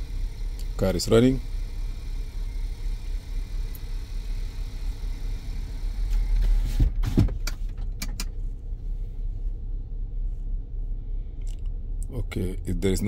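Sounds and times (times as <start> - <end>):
car engine idling: 0.0 - 13.0
sharp clicks and knocks: 6.0 - 8.4.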